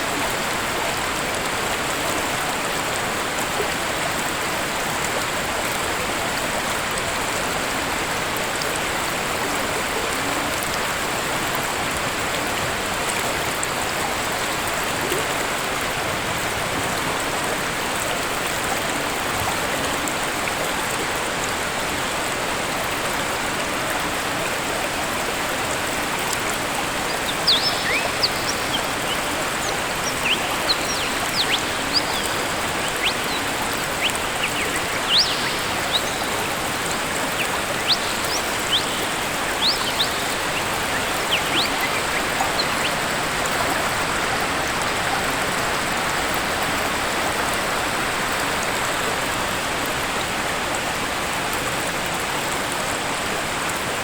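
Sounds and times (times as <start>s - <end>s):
waterfall roaring: 17.6s - 47.6s
bird chirping: 26.8s - 43.5s.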